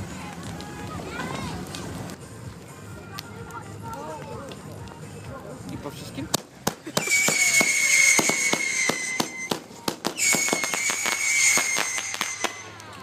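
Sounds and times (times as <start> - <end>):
firework pops and bangs: 0.3 - 5.0, 5.6 - 13.0
firework whistles: 6.9 - 12.9.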